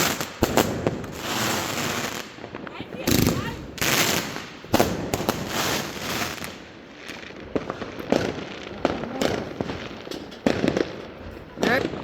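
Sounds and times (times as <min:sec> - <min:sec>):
fireworks bangs: 0:00.0 - 0:12.0
fireworks crackling: 0:00.0 - 0:12.0.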